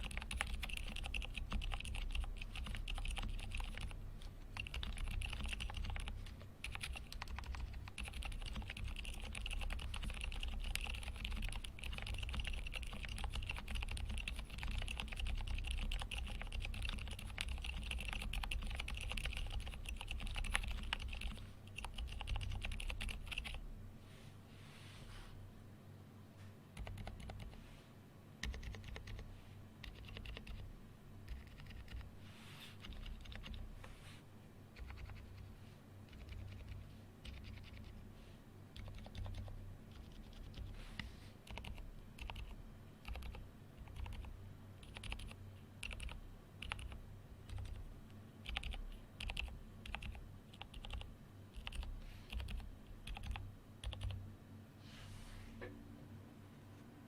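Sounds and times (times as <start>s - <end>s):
mechanical keyboard typing: 0.0s - 23.6s, 26.8s - 27.6s, 28.4s - 30.7s, 31.3s - 32.1s, 32.8s - 33.6s, 34.8s - 35.5s, 36.1s - 38.0s, 38.8s - 40.7s, 41.4s - 47.8s, 48.4s - 54.2s.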